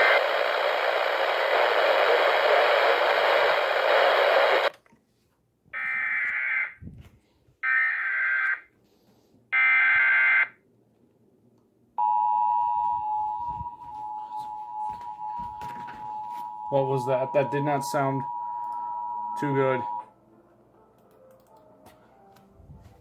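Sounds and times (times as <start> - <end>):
radio hiss: 0.0 - 4.7.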